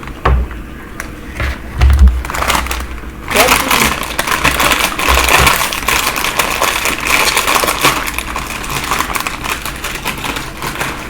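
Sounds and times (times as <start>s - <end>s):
chewing crunchy tortilla chips: 2.5s - 11.0s.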